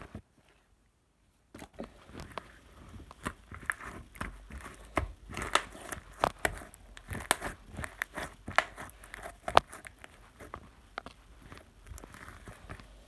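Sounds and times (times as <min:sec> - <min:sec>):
crinkly rustling: 0:01.6 - 0:13.0
clicks and taps: 0:03.1 - 0:11.2.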